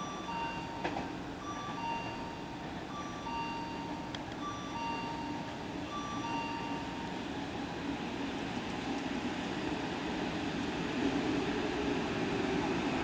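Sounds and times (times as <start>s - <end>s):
two-note warning chime: 0.0s - 7.2s
train rumbling: 0.0s - 13.0s.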